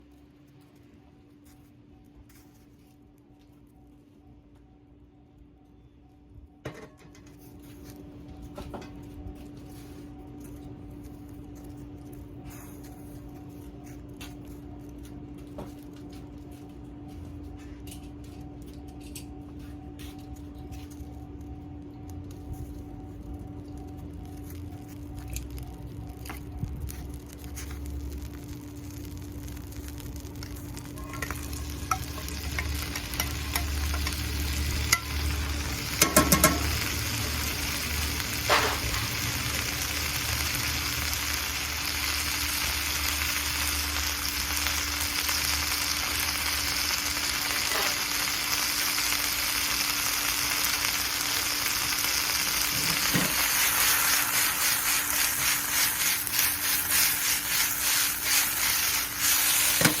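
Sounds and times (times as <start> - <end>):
rhythmic stirring in a pan: 19.6 - 47.9, 51.6 - 60.0
meat sizzling in a pan: 25.4 - 60.0.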